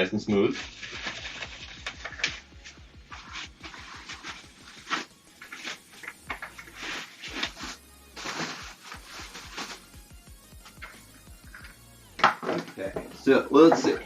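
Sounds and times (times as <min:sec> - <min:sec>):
background music: 0:00.0 - 0:14.0
plastic parts rustling and clicking: 0:00.6 - 0:02.5.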